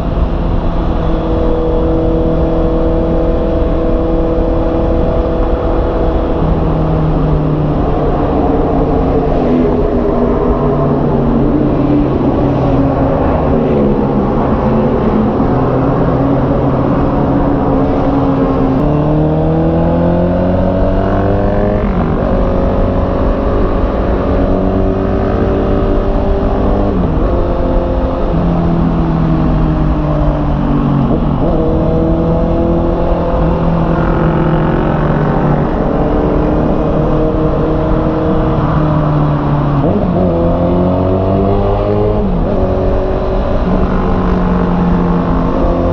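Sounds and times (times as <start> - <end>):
motorcycle engine accelerating: 0.0 - 45.9.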